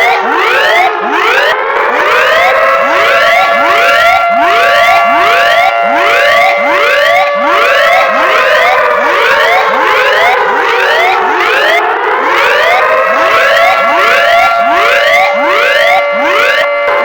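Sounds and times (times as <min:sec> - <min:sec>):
rising siren whoops: 0:00.0 - 0:17.0
steady siren tones: 0:00.0 - 0:17.0
wailing siren tone: 0:00.0 - 0:17.0.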